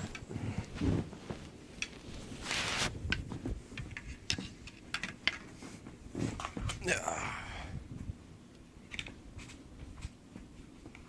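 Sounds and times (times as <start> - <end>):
scraping rustle: 0.0 - 4.6
plastic parts clicking and knocking: 3.8 - 5.6, 8.9 - 9.2.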